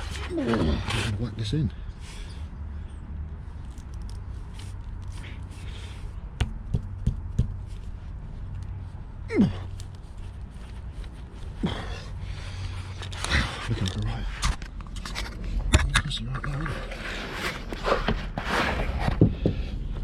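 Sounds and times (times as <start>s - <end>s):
man grunting: 9.3s - 9.7s.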